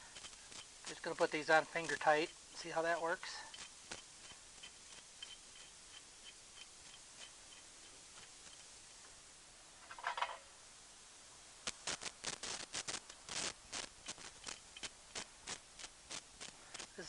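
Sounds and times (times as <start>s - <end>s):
faint even ticking: 0.0s - 8.8s.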